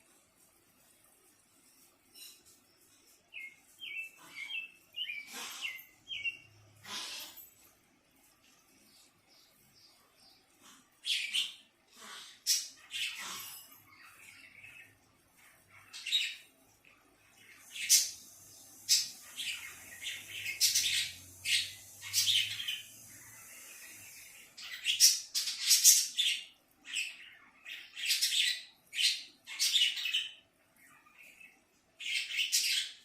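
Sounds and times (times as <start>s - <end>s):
animal harsh scratchy calls: 4.1s - 5.9s, 6.8s - 7.5s.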